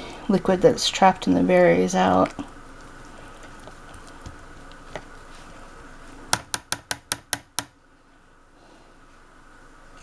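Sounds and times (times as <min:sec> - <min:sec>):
faint steady hum: 0:00.0 - 0:10.0
utensil tapping on a strainer: 0:06.4 - 0:07.8.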